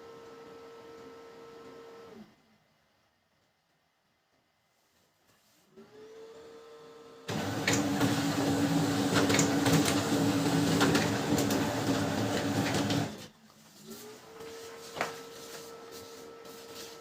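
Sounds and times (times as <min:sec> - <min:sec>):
printer motor whine: 0:05.9 - 0:13.3
printer paper feed running: 0:07.3 - 0:13.3.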